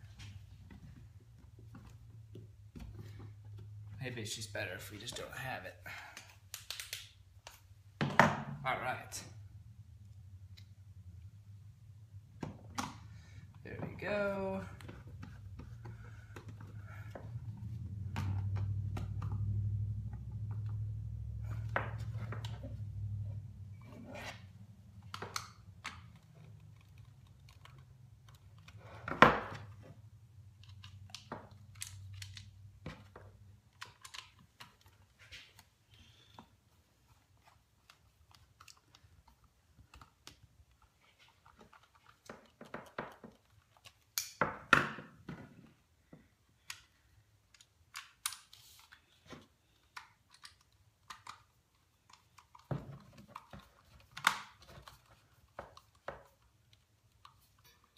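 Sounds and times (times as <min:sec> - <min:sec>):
objects being handled: 0:12.4 - 0:57.9.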